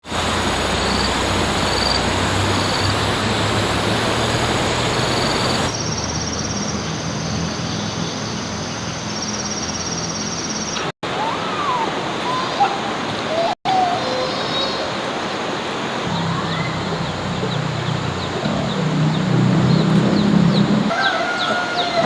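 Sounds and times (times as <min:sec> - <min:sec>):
outdoor rushing noise: 0:00.0 - 0:09.9.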